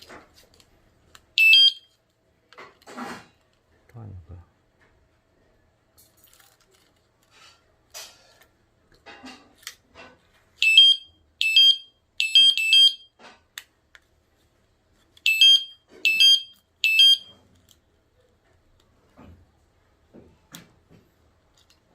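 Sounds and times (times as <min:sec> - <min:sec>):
high electronic alarm chirps: 0:01.4 - 0:01.8, 0:10.6 - 0:13.1, 0:15.3 - 0:17.3.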